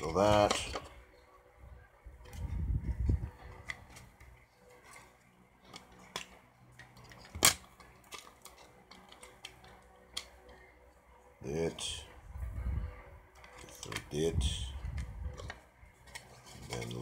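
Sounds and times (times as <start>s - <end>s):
plastic parts clicking and tapping: 0.1s - 1.0s, 2.2s - 10.7s, 13.3s - 17.0s.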